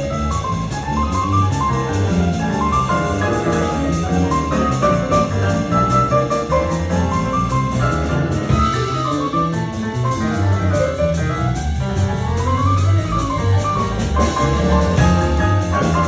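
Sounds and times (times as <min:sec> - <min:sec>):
bass line: 0:00.0 - 0:16.0
jazz band playing: 0:00.0 - 0:16.0
sliding melody line: 0:00.3 - 0:11.0.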